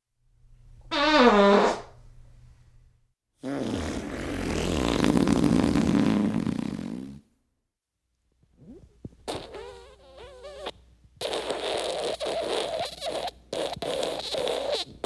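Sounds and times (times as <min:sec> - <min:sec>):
fart sound effects: 0:00.9 - 0:02.0, 0:03.4 - 0:07.2, 0:08.6 - 0:15.0.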